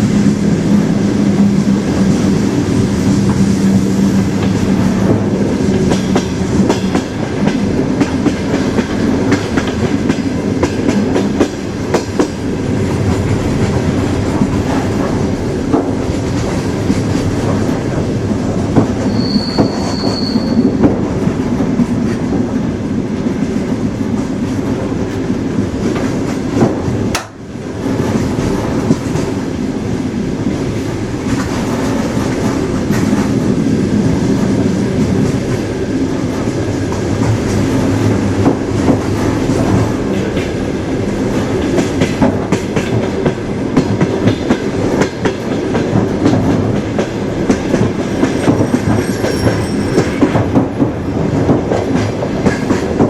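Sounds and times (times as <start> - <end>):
train rumbling on rails: 0.0 - 53.0
high-pitched wheel squeal: 19.0 - 20.8
wheels clicking over rail joints: 25.0 - 29.4.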